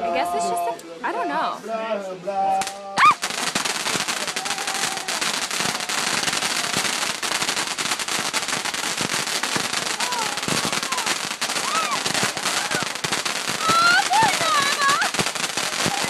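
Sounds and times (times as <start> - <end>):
firework rapid crackling: 2.6 - 16.0.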